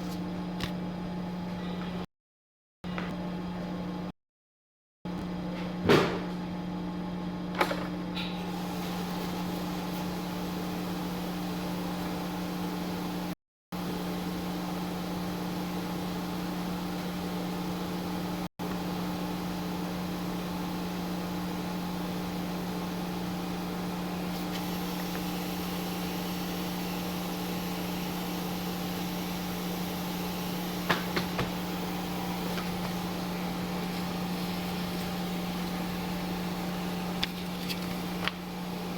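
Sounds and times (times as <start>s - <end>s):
paper cutter motor humming: 8.5s - 38.9s.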